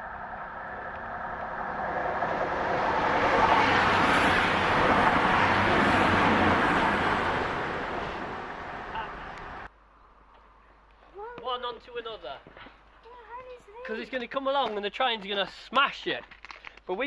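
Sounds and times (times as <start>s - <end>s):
vehicle passing by: 0.0s - 9.7s.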